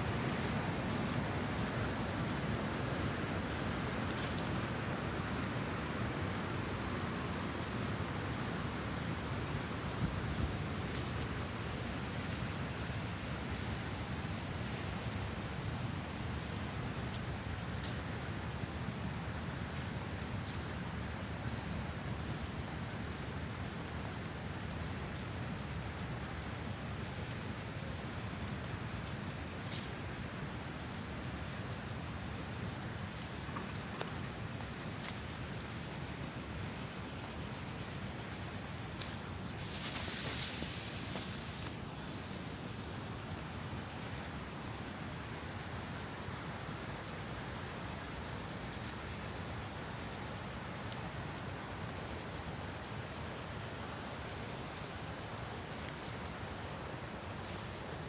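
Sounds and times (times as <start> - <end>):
insects trilling: 0.0 - 58.0
flowing stream: 39.0 - 41.8.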